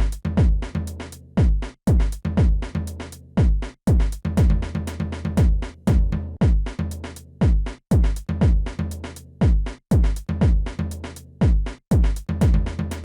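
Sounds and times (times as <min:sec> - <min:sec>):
deep kick drum: 0:00.0 - 0:13.0.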